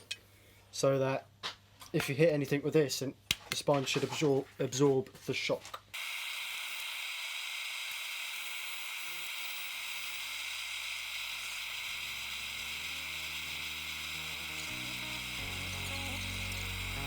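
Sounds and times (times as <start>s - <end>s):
forge hissing: 7.4s - 17.0s
low background music: 14.4s - 17.0s.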